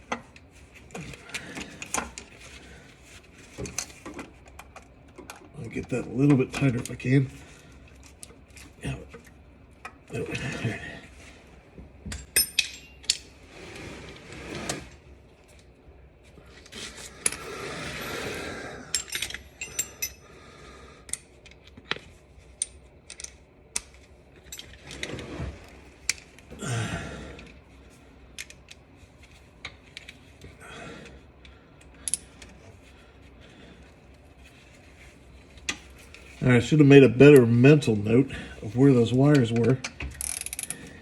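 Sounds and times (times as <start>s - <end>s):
hand tools clinking on metal: 18.9s - 20.2s.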